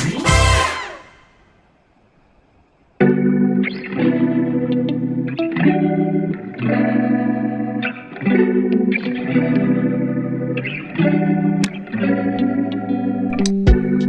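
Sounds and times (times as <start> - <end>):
electric guitar chords with chorus: 3.0 - 14.0.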